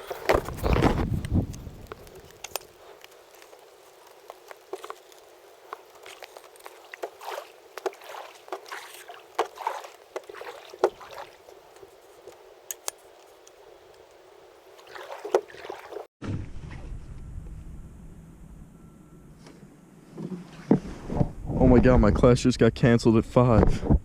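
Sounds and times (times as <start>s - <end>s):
paddle swishes and splashes: 0.0s - 13.3s, 14.6s - 16.8s
rain hiss: 1.2s - 16.0s.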